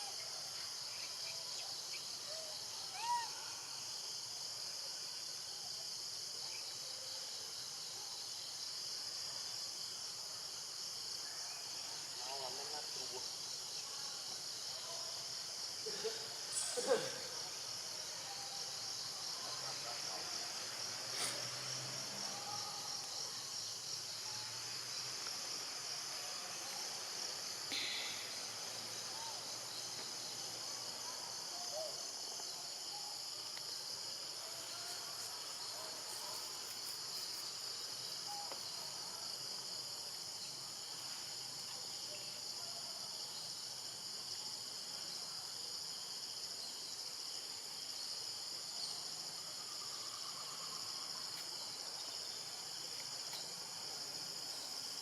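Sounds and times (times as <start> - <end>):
insect chorus droning: 0.0 - 55.0.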